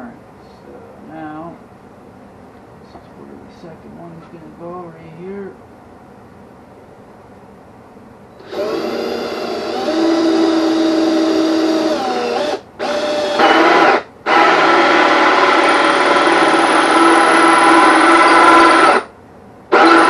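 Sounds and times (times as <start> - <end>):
power drill with hole saw in plywood: 8.4 - 19.1, 19.7 - 20.0.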